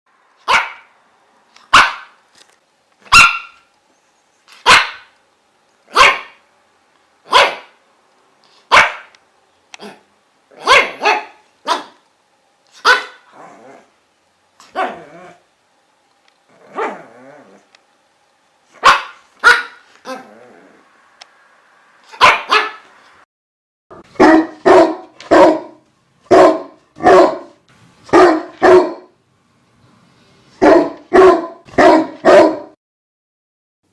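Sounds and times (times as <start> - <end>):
dog barking: 0.4 - 0.9, 1.7 - 2.2, 3.1 - 3.6, 4.6 - 5.2, 5.9 - 6.4, 7.3 - 7.8, 8.7 - 9.2, 10.6 - 12.0, 12.8 - 13.3, 14.7 - 15.1, 16.7 - 17.1, 18.8 - 20.2, 22.1 - 22.9, 24.1 - 29.2, 30.6 - 32.8.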